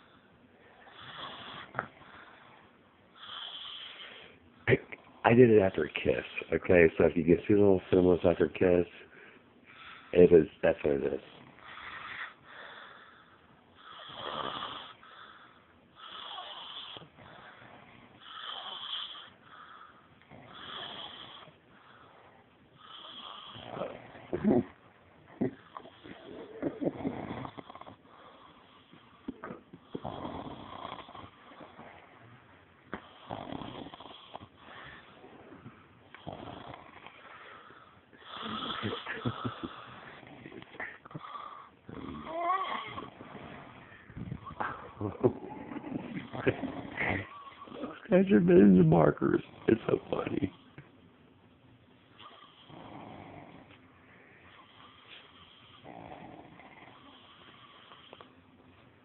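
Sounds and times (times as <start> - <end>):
soft breaths: 0.0 - 30.3, 30.9 - 50.9, 53.5 - 56.0
person snoring: 38.2 - 48.3.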